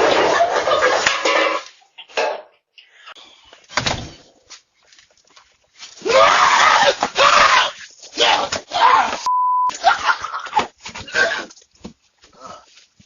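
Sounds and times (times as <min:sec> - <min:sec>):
person screaming loudly: 0:06.0 - 0:09.3.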